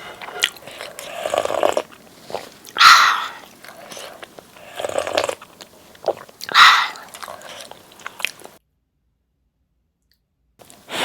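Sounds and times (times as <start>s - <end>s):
loud slurp: 0.0s - 8.6s
wet chewing: 0.0s - 8.6s.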